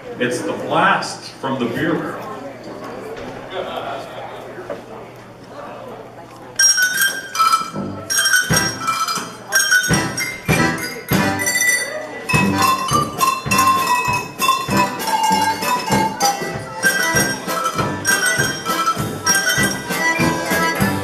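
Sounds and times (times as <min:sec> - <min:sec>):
tuned cowbells playing: 0:06.6 - 0:21.0.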